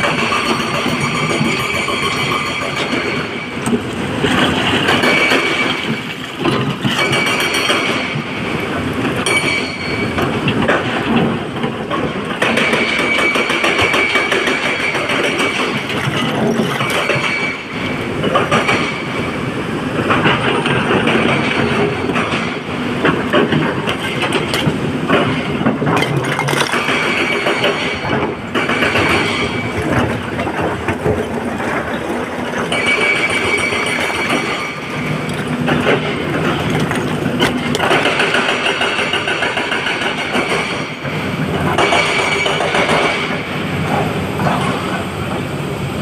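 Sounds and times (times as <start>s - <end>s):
excavator engine running: 0.0s - 46.0s
metallic clatter and knocking: 20.1s - 40.9s.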